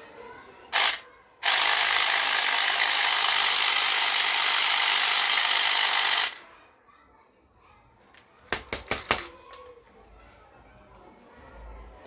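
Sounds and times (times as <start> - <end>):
small mechanism rattling whir: 0.7 - 6.4.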